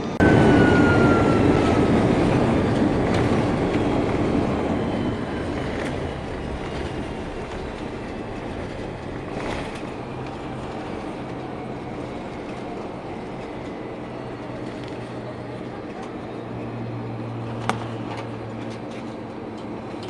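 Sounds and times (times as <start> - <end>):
aircraft engine hum: 0.0 - 20.0
aircraft wheels rumbling on runway: 0.0 - 20.0
aircraft bump: 17.4 - 19.2.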